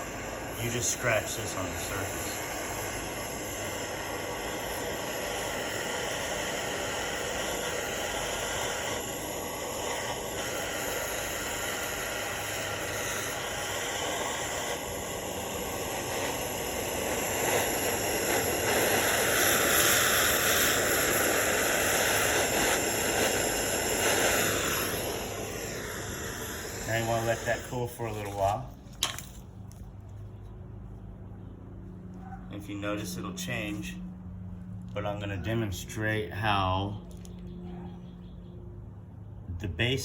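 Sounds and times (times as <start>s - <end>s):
gas torch flame hissing: 0.0s - 29.9s.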